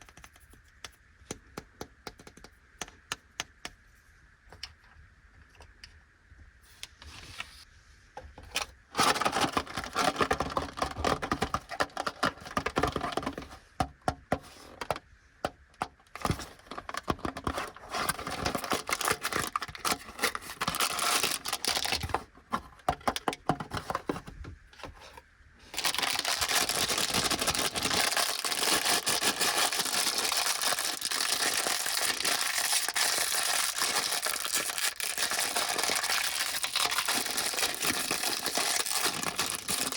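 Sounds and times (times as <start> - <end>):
plastic packaging crinkling: 9.0 - 13.4, 16.2 - 22.3, 25.7 - 39.9.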